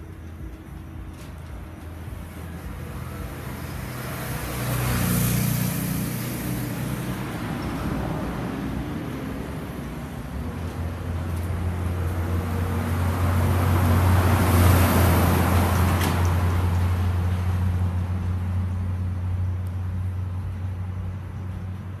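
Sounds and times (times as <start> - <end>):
engine humming: 0.0 - 22.0
vehicle passing by: 0.0 - 22.0.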